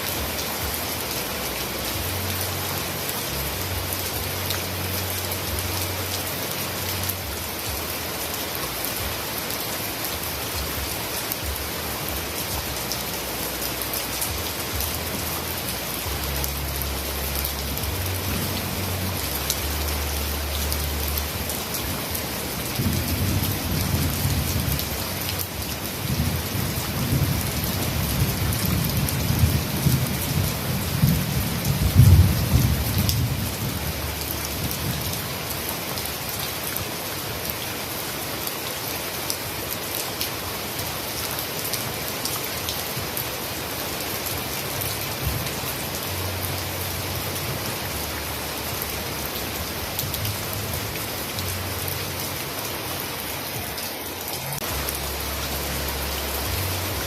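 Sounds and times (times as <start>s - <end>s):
heavy rain falling: 0.0s - 57.0s
rolling thunder rumble: 26.0s - 35.2s.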